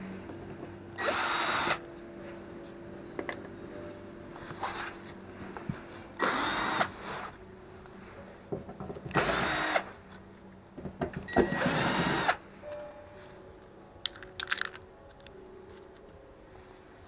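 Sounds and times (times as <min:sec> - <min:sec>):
power tool running: 0:01.0 - 0:01.8, 0:06.2 - 0:07.0, 0:09.1 - 0:09.9, 0:11.4 - 0:12.4
parts clicking and rattling: 0:14.0 - 0:16.1.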